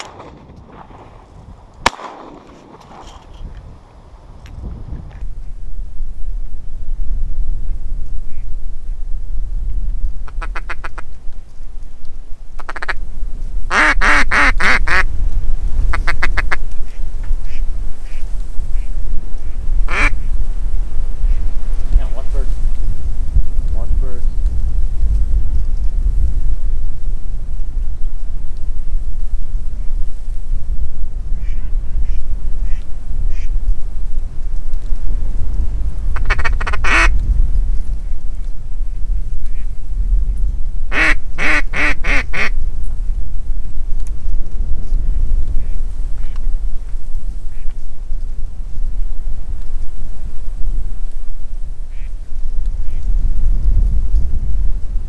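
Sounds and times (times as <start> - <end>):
wind buffeting microphone: 0.0 - 55.0
duck call quacking: 10.3 - 11.1, 12.6 - 13.0, 13.7 - 15.1, 15.9 - 16.6, 19.9 - 20.3, 31.4 - 33.5, 36.2 - 37.1, 40.9 - 42.5.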